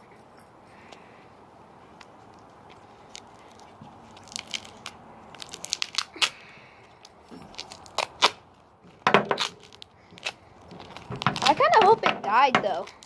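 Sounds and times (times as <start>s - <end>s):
duct tape peeling: 2.0s - 11.9s.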